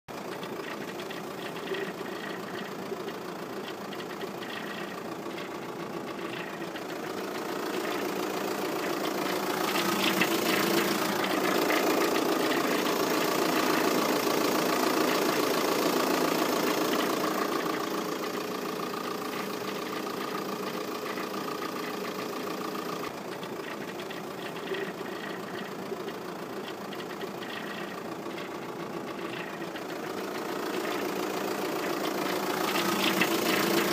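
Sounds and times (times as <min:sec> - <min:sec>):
diesel engine running: 0:00.1 - 0:33.9
rapid engine ticking: 0:00.1 - 0:33.9.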